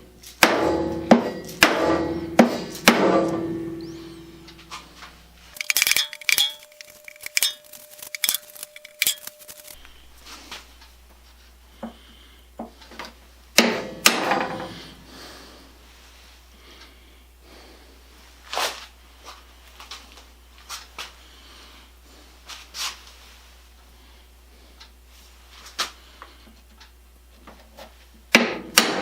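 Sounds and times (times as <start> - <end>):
metal tools clinking on wood: 5.6 - 9.8
tools rattling: 5.6 - 9.8.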